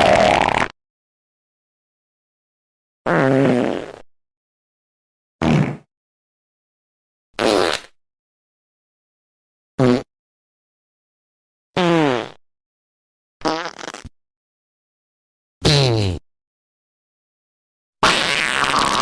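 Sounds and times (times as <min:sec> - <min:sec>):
fart sounds: 0:00.0 - 0:00.8, 0:03.1 - 0:04.0, 0:05.4 - 0:05.9, 0:07.4 - 0:08.0, 0:09.8 - 0:10.1, 0:11.8 - 0:12.4, 0:13.4 - 0:14.2, 0:15.6 - 0:16.2, 0:18.0 - 0:19.0.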